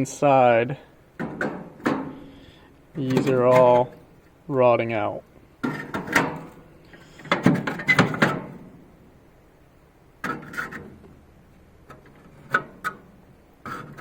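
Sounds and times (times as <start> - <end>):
metal parts clanking and scraping: 5.6 - 6.6.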